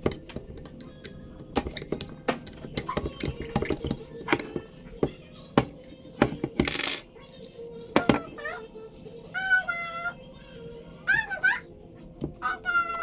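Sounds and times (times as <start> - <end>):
metallic clicks of tools and parts: 0.0 - 4.4.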